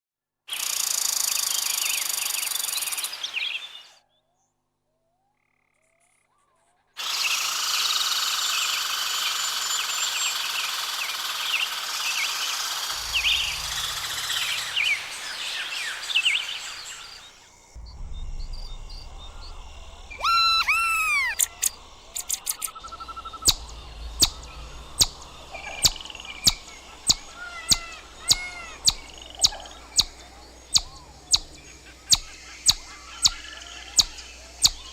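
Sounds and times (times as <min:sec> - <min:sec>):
sharp chipmunk chip calls: 0:07.0 - 0:17.5, 0:20.2 - 0:34.9
chipmunk chirping: 0:20.2 - 0:34.9.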